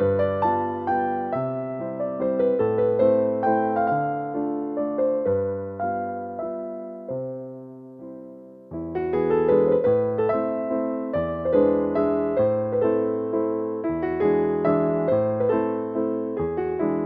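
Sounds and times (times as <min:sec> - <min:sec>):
soft electric piano melody: 0:00.0 - 0:17.0.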